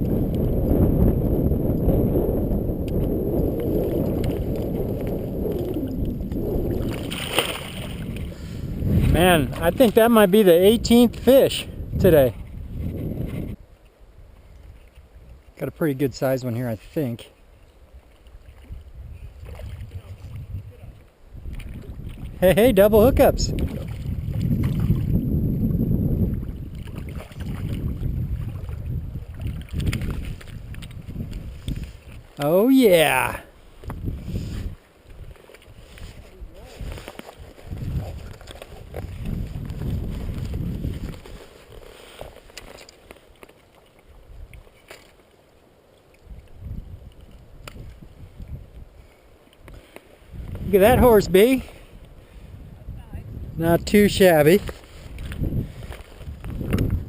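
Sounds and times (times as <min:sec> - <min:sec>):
wind buffeting microphone: 0:00.0 - 0:15.5, 0:18.4 - 0:42.3, 0:46.2 - 0:57.0.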